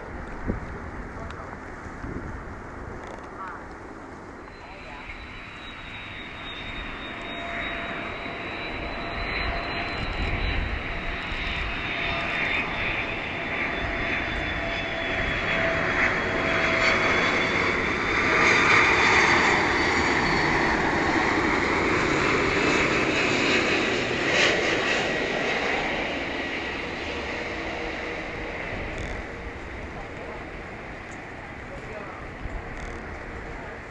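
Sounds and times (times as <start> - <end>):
jet engine whine and rush: 0.0 - 33.9.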